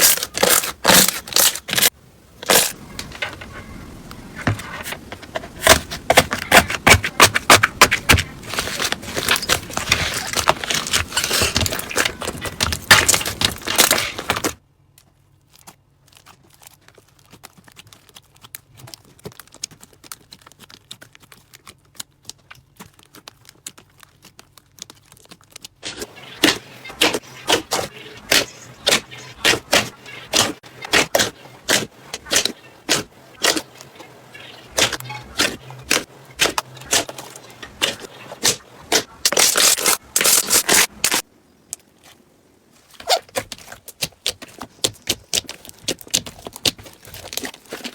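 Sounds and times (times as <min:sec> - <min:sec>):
slime crackling and popping: 0:15.0 - 0:41.3.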